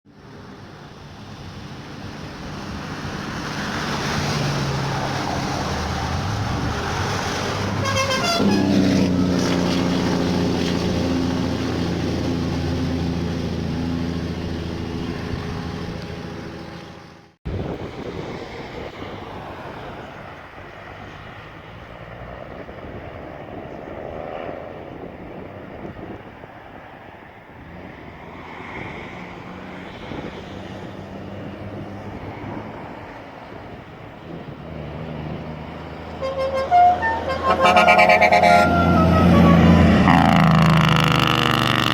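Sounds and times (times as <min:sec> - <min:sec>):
diesel bus engine running: 0:00.3 - 0:17.4, 0:33.6 - 0:41.9
bus horn held: 0:07.6 - 0:10.7, 0:36.2 - 0:40.8.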